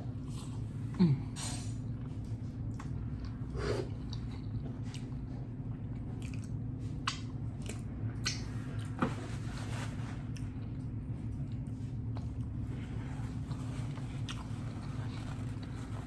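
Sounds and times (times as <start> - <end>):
steady low hum: 0.0 - 16.0
close chewing of food: 2.0 - 9.0, 10.3 - 16.0
wet mouth smacks and clicks: 7.0 - 7.3.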